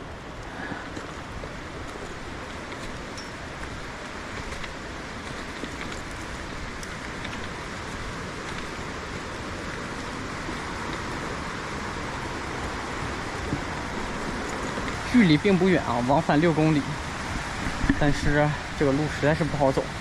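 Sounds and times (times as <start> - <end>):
stream water rushing: 6.1 - 20.0.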